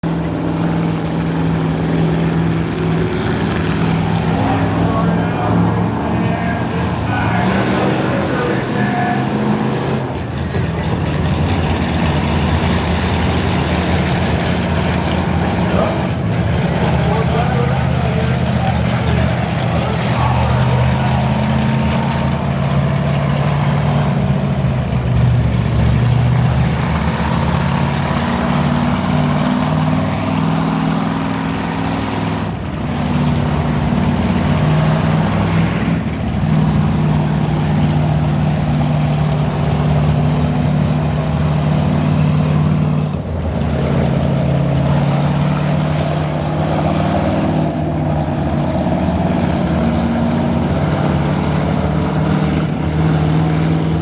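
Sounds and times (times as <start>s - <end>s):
race car engines: 0.0s - 54.0s.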